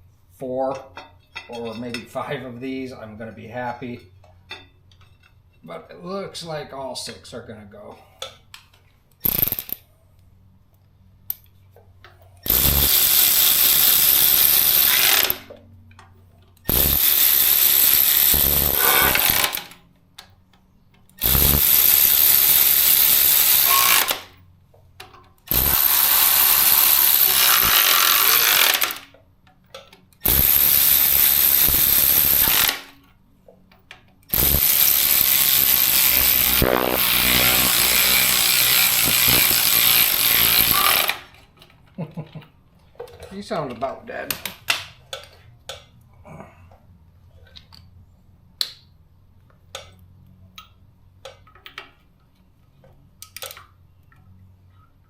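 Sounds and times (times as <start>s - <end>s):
electric ratchet running bolts: 9.2s - 9.8s, 12.4s - 15.6s, 16.6s - 19.8s, 21.1s - 24.4s, 25.4s - 29.1s, 30.2s - 33.0s, 34.2s - 41.4s.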